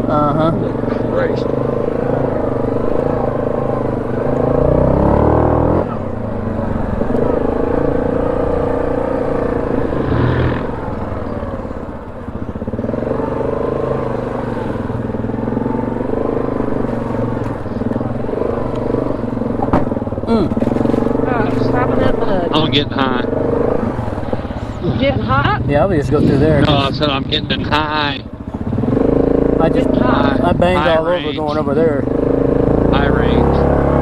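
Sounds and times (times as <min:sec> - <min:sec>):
atv engine revving: 0:00.0 - 0:34.0.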